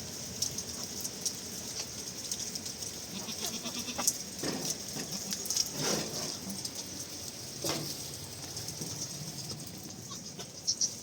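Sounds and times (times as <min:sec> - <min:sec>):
animal bleating: 0:03.1 - 0:04.1, 0:10.1 - 0:11.0.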